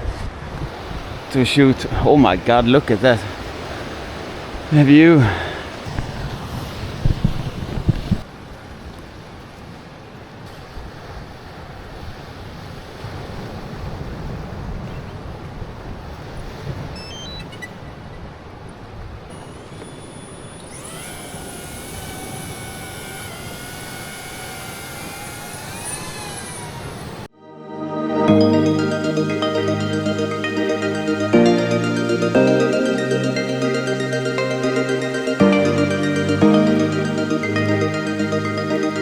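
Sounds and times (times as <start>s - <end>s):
wind: 0.0s - 27.4s
short beeps: 17.0s - 17.7s
drone propellers whining: 19.3s - 27.3s.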